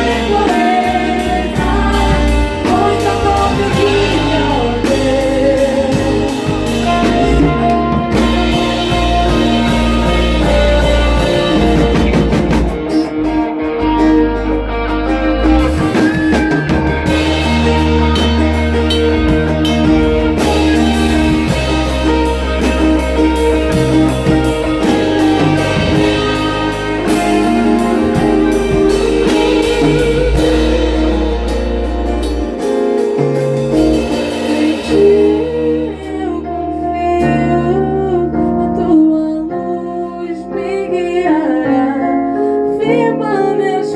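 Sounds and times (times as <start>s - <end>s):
band playing live music: 0.0s - 43.9s.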